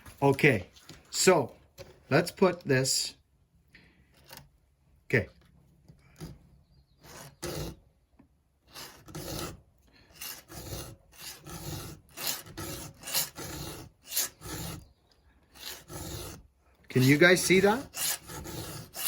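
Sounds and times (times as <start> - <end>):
file rasping on chainsaw chain: 7.0 - 7.8, 8.7 - 14.9, 15.5 - 19.0.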